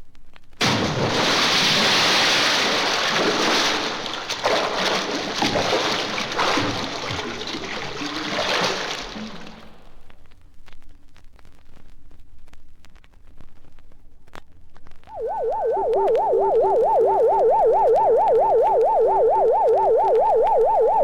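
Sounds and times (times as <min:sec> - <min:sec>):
water rushing and splashing: 0:00.6 - 0:10.0
vinyl surface crackle: 0:09.6 - 0:17.6.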